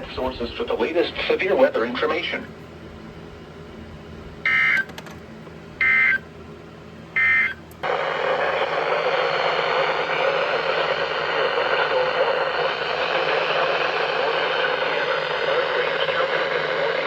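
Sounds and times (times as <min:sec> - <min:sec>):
radio static hiss: 0:00.0 - 0:02.4, 0:07.8 - 0:17.0.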